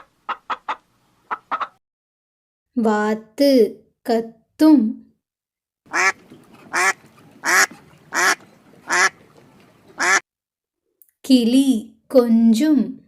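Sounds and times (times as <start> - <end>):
duck quacking: 0.0 - 1.8, 5.9 - 9.2, 9.9 - 10.2.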